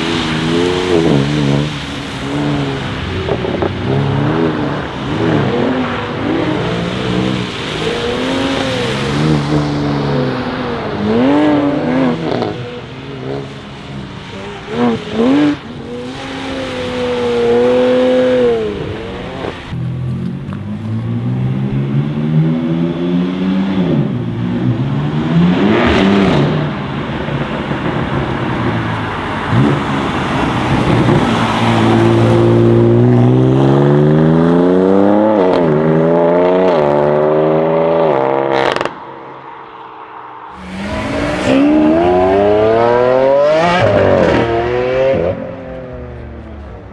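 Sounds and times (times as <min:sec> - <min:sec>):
car engine accelerating hard: 0:00.0 - 0:39.0, 0:40.5 - 0:46.9.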